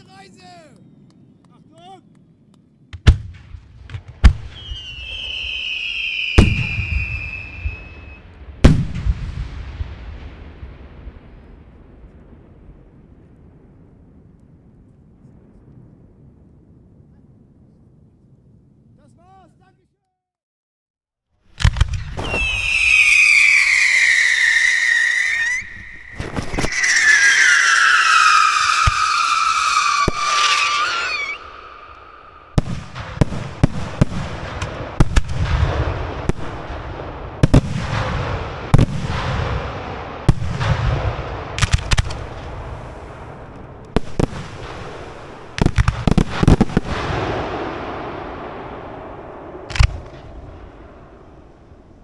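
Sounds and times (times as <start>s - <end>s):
fireworks bangs: 2.9s - 14.0s, 21.5s - 52.0s
high firework whistle: 4.5s - 8.3s, 21.7s - 32.9s
firework shell bursts: 21.6s - 33.2s
low rumbling echo: 31.2s - 52.0s.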